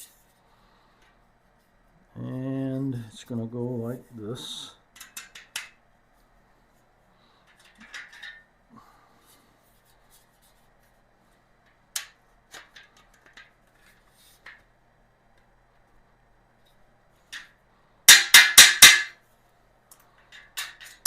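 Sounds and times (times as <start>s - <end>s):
shelf parts clicking and rattling: 7.4s - 8.5s, 20.2s - 21.0s.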